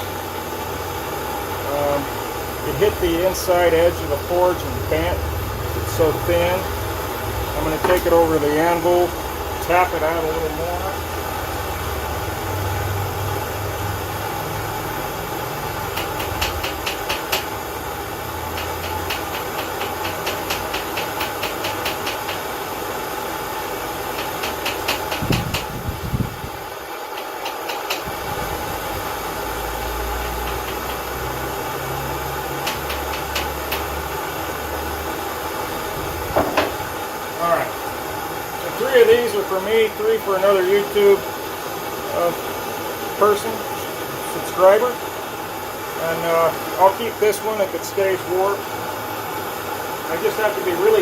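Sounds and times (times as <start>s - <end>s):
forge burner rushing: 0.0s - 51.0s
hammer tapping on metal: 15.9s - 17.5s, 18.5s - 22.4s.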